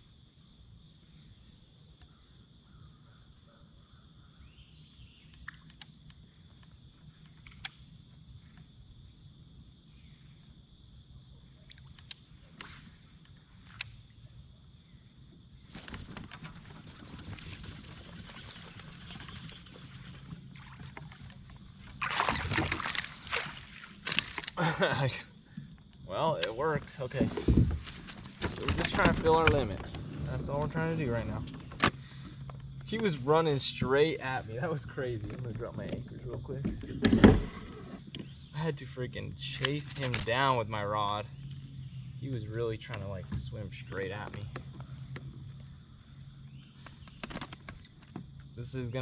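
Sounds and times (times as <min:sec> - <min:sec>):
fish splashing and thrashing: 0:15.7 - 0:25.0
high-pitched insect drone: 0:16.7 - 0:49.0
rush of water: 0:17.1 - 0:24.6.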